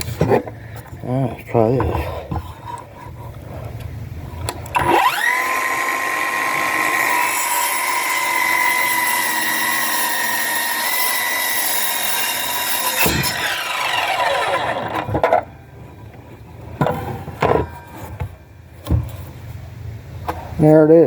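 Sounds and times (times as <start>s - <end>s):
circular saw cutting wood: 4.7s - 15.5s.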